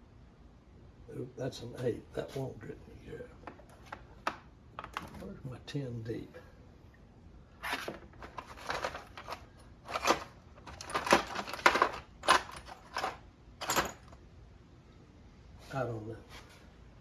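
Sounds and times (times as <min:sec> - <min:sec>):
metal tools clattering: 0:07.6 - 0:14.1.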